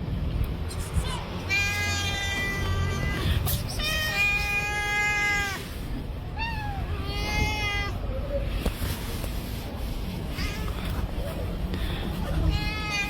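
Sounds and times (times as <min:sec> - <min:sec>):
cat meowing: 0:01.0 - 0:05.6, 0:06.3 - 0:08.1, 0:10.3 - 0:10.9, 0:12.3 - 0:13.0.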